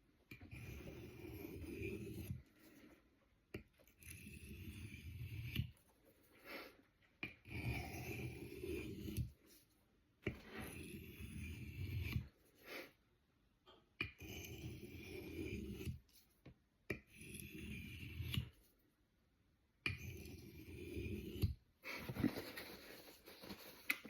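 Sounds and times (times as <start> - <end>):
knife scraping on sharpening stone: 0.3 - 2.4, 3.8 - 5.7, 7.2 - 9.3, 10.4 - 12.2, 14.1 - 16.0, 16.9 - 18.5, 19.9 - 21.6.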